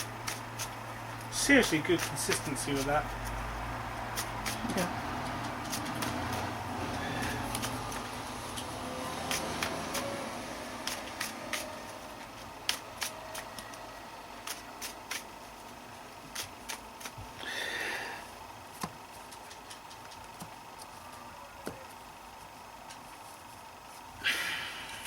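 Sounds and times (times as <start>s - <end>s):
card rustle: 0.0s - 3.5s, 4.1s - 17.3s
low room hum: 0.0s - 25.0s.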